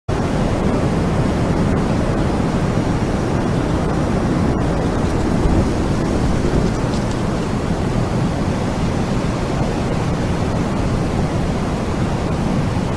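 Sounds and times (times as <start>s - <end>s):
steady low rumbling: 0.5s - 9.0s.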